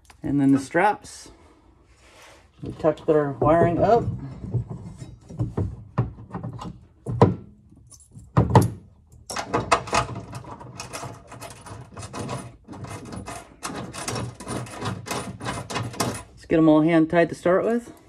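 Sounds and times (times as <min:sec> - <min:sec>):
metallic clicking and rattling: 0:07.9 - 0:16.4
knocks on metal straps: 0:08.2 - 0:10.3.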